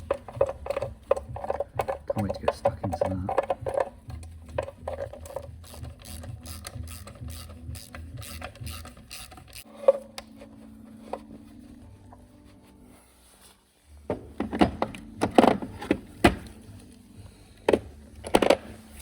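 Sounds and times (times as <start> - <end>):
ratchet wrench clicking: 3.7 - 9.7.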